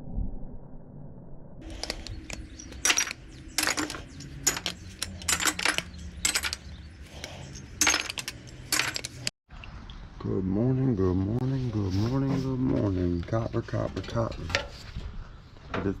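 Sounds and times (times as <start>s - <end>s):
metal pieces clinking: 1.6s - 9.3s.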